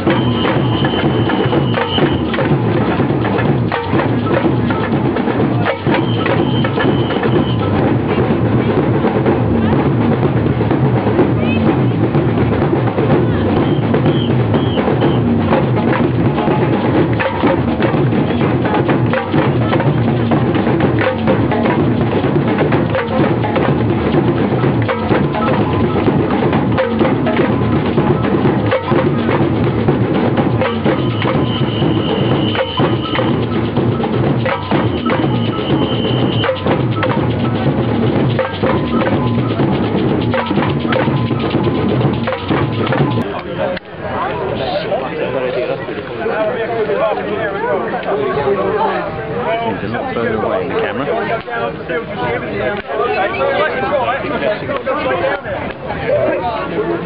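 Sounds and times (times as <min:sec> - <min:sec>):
drum band playing: 0:00.0 - 0:43.4.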